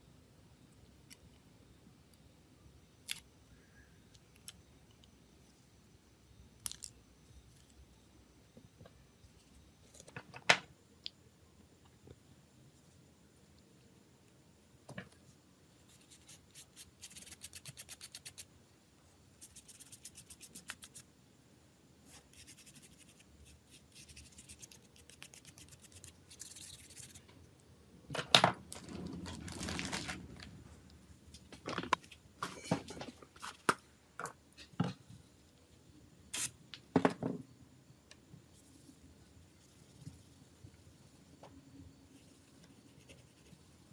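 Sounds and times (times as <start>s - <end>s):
fine rapid scratching: 15.8s - 18.5s, 19.4s - 21.1s, 22.1s - 27.3s, 42.2s - 43.9s.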